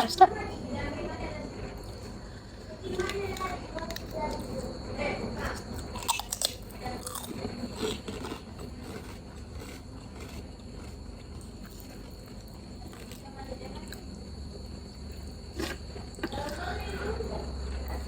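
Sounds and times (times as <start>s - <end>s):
chewing: 5.5s - 17.3s
crunching crisp snack: 5.6s - 16.7s.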